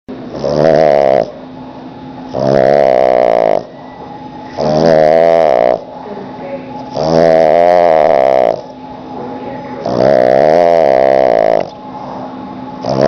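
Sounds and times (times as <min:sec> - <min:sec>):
dog snoring loudly: 0:00.3 - 0:01.4, 0:02.3 - 0:03.7, 0:04.5 - 0:05.9, 0:06.8 - 0:08.8, 0:09.8 - 0:12.2, 0:12.8 - 0:13.0.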